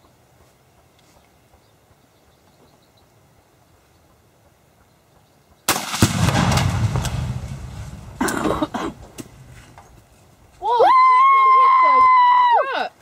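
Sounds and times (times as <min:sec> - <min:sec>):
rifle shot crack: 0:05.7 - 0:09.5
deep explosion boom: 0:05.9 - 0:09.5.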